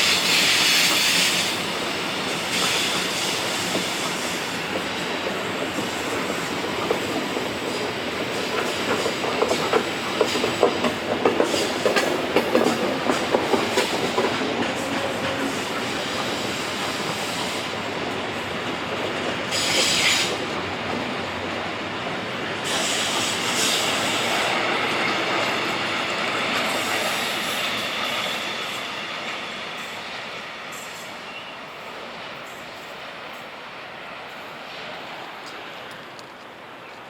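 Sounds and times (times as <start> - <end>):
train wheels squealing: 0.0 - 12.1, 19.4 - 20.5, 22.6 - 33.1
train wheels on rails: 0.0 - 37.0.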